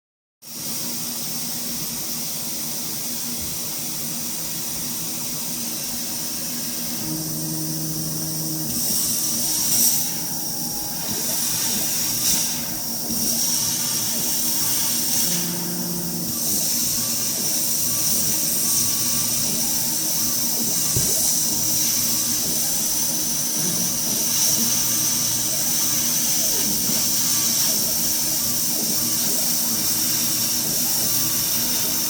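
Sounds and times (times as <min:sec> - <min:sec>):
machine hiss: 0:00.5 - 0:32.0
high-pitched motor whine: 0:05.9 - 0:32.0
short low motor tones: 0:07.0 - 0:12.0.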